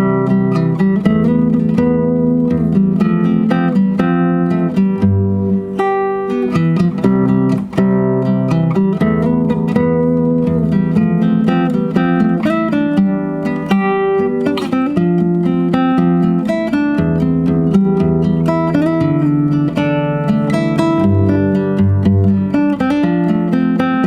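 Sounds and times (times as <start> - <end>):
fingerstyle acoustic guitar: 0.0 - 24.0.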